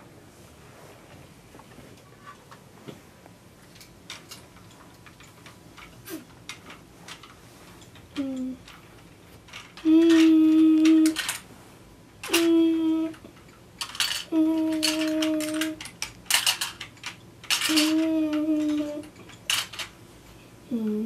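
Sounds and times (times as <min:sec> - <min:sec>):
plastic toy vehicles clacking: 0:03.7 - 0:11.4, 0:12.2 - 0:20.0
child humming: 0:08.2 - 0:08.6, 0:09.8 - 0:11.2, 0:12.3 - 0:13.2, 0:14.3 - 0:15.8, 0:17.7 - 0:19.1, 0:20.7 - 0:21.0.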